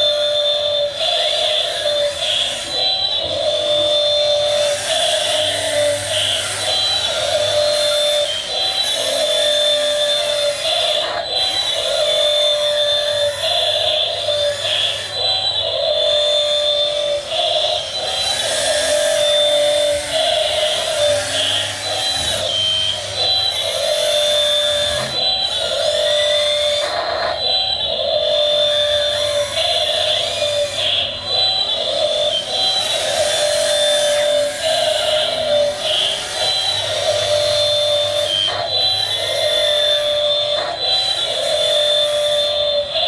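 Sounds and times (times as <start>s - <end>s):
small electric motors whining: 0.0s - 43.0s.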